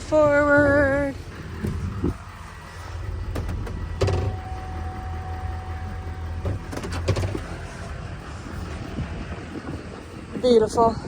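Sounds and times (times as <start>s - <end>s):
high whine: 0.0s - 10.7s
engine low steady rumble: 0.0s - 11.0s
machine clunks: 3.0s - 7.8s.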